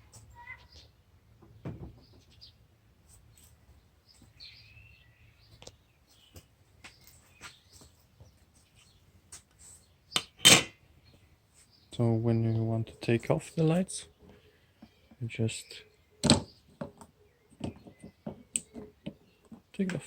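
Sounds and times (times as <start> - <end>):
bird chirp: 0.2 - 20.0
handling clicks and taps: 16.2 - 20.0.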